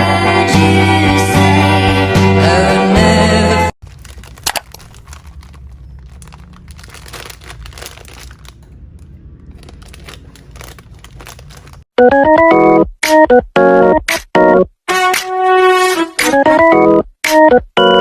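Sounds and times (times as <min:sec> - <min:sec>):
crinkling and rustling: 0:03.8 - 0:11.9
keyboard music: 0:12.0 - 0:18.0.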